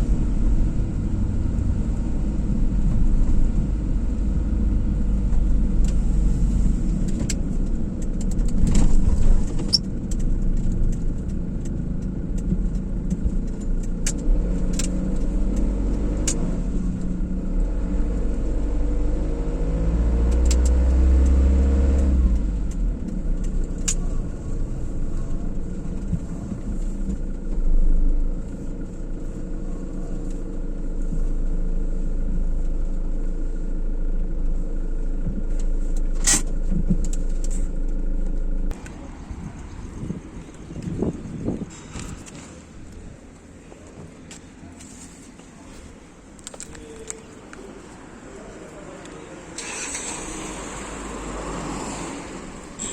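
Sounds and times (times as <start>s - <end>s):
car engine and tyre rumble: 0.0s - 52.9s
sharp clicks: 7.0s - 17.1s.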